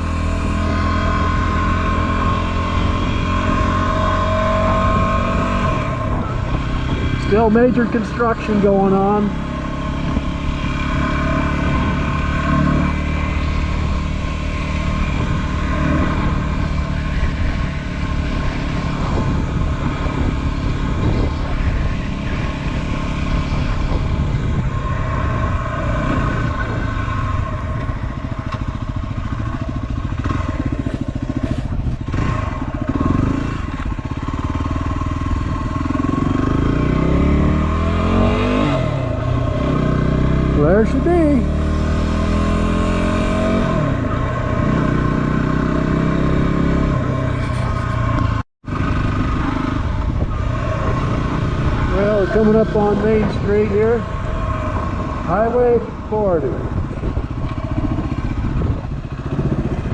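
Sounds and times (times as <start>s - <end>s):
motorcycle engine running: 0.0s - 59.9s.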